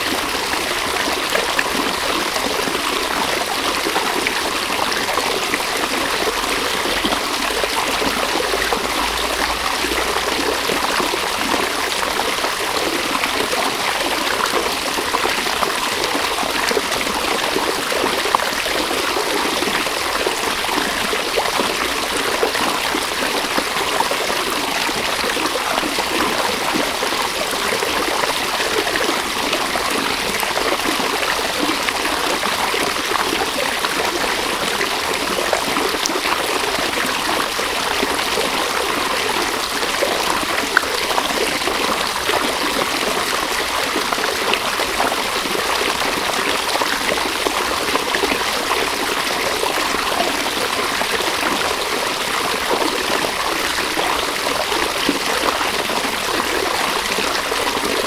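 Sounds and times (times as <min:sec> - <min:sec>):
river flowing over stones: 0:00.0 - 0:58.0.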